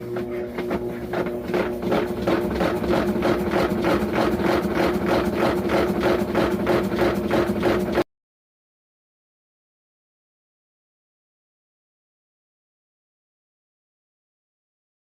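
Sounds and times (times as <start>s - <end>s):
rhythmic rubbing knocking: 0.0s - 8.0s
washing machine motor hum: 0.0s - 8.1s.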